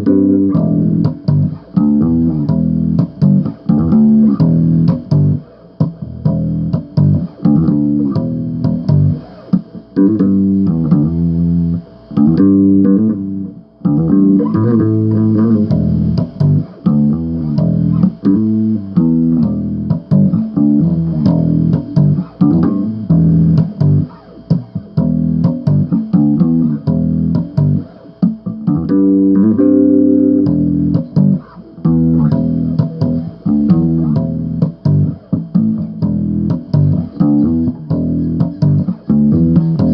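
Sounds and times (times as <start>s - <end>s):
bass guitar riffing: 0.0s - 39.9s.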